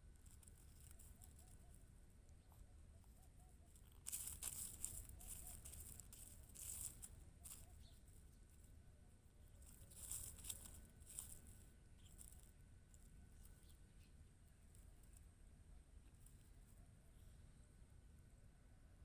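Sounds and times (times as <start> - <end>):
kitten scratching in litter: 0.0 - 1.9, 2.6 - 8.8, 9.4 - 13.6.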